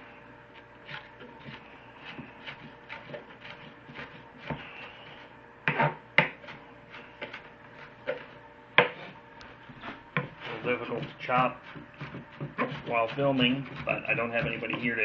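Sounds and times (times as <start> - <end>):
knife chopping on cutting board: 5.6 - 6.6, 8.1 - 9.1, 9.8 - 14.9.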